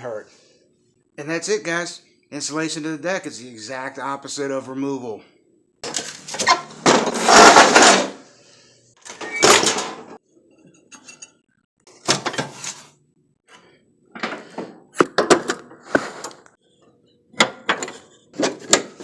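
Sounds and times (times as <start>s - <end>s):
metal tools clanking and scraping: 10.7s - 11.4s.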